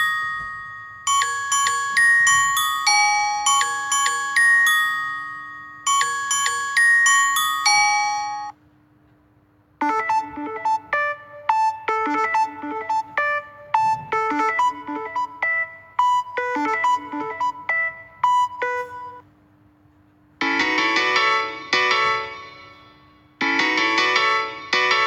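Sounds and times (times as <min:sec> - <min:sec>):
bell-like tune: 0:00.0 - 0:08.6
synthesized keyboard ringtone melody: 0:00.0 - 0:08.6, 0:09.8 - 0:19.2, 0:20.4 - 0:25.0.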